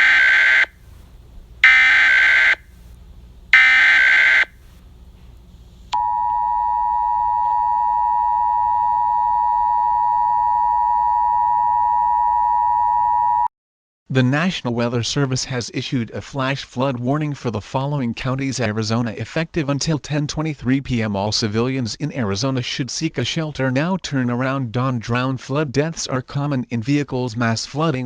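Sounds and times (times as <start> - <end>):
piercing two-tone attention signal: 0.0 - 0.7, 1.6 - 2.6, 3.6 - 4.5
screeching digital data tones: 0.0 - 0.7, 1.6 - 2.6, 3.6 - 4.5.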